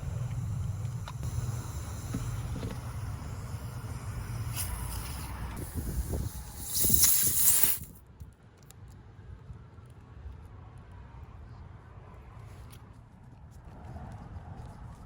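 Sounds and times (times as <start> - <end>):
low rumble: 0.0 - 7.1
air hissing from tire: 0.0 - 8.0.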